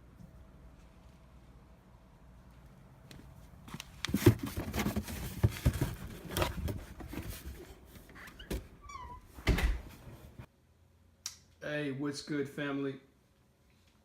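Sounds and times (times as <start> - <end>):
objects being handled: 3.1 - 8.7.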